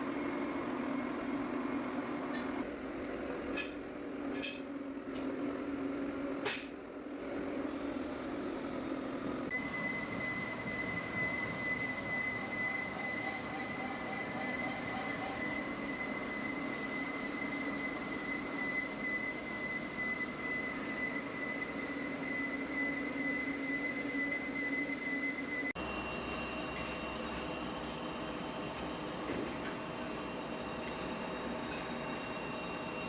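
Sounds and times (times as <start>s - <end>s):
lathe high-pitched whine: 8.1s - 33.0s.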